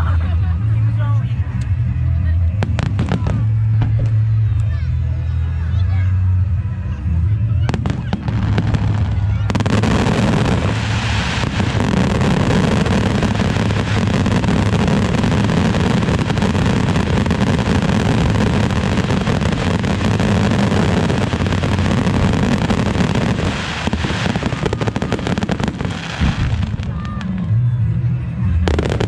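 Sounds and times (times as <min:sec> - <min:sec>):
rapid firework crackling: 0:07.6 - 0:27.4
firework bursts: 0:07.7 - 0:27.4.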